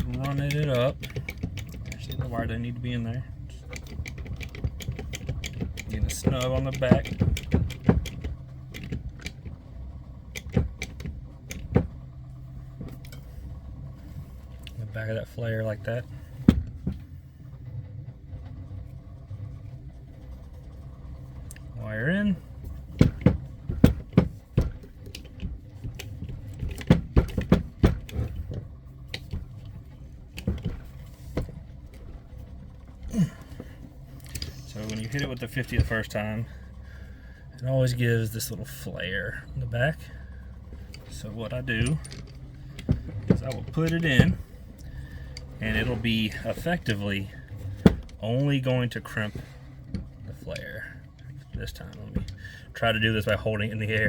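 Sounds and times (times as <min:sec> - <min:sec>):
low steady hum: 0:00.0 - 0:54.0
clicks of copper cable and metal lug: 0:03.7 - 0:09.6, 0:10.3 - 0:12.0.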